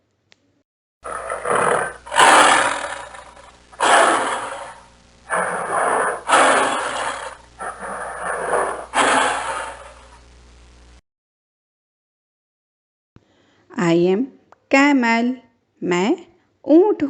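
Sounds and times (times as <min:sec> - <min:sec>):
tiger roaring: 0:01.0 - 0:10.1.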